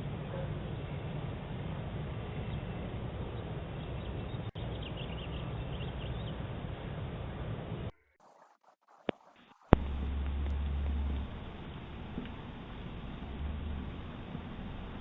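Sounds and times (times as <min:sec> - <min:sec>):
low outdoor rumble: 0:08.9 - 0:15.0.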